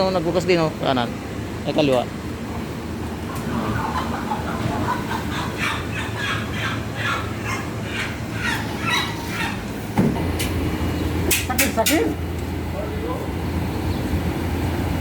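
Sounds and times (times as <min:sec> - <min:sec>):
chickens clucking and squawking: 0:03.0 - 0:10.0.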